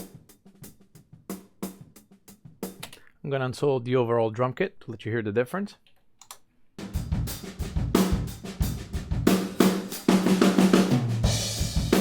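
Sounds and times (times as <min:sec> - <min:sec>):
drum kit groove: 0:00.0 - 0:03.1, 0:06.8 - 0:12.0.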